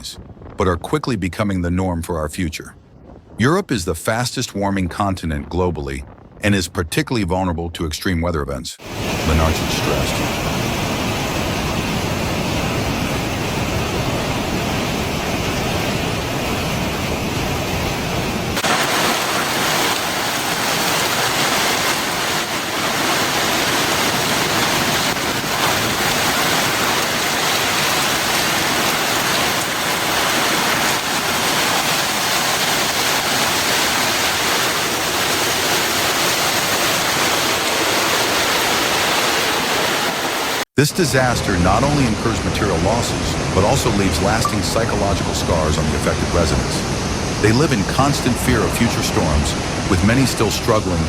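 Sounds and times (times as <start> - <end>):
floodwater rushing: 8.8 - 51.0.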